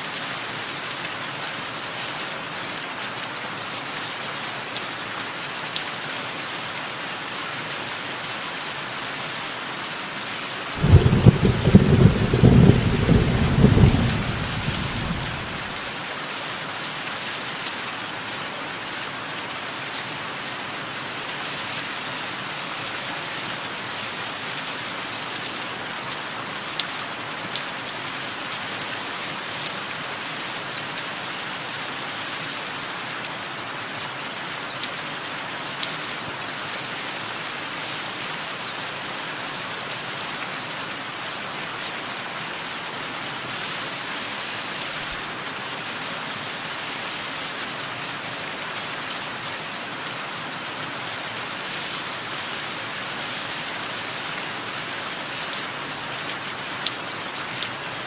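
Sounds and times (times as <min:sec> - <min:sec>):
rain hiss: 0:00.0 - 0:58.0
small birds chirping: 0:10.4 - 0:15.7
low thunder rumble: 0:10.8 - 0:15.9.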